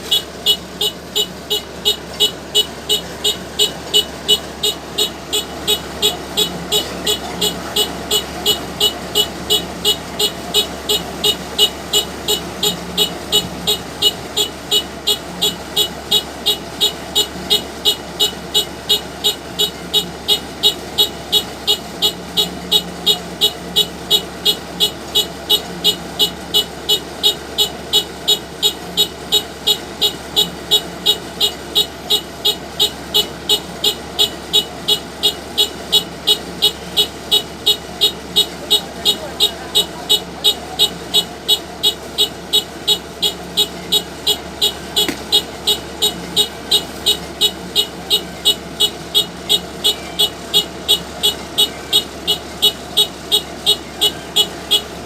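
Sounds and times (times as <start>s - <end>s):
combine harvester engine running: 0.0s - 55.0s.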